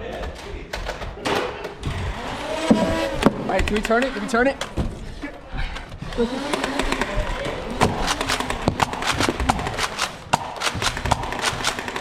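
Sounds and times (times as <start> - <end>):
toy blasters firing: 6.4 - 12.0.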